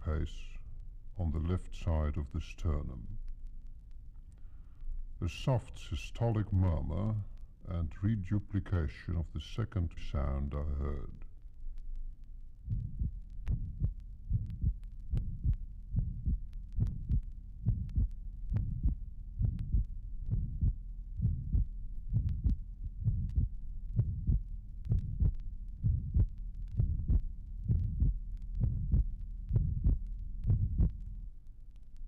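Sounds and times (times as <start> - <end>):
soft heart murmur: 0.0 - 32.0
heartbeat through stethoscope: 12.6 - 31.2.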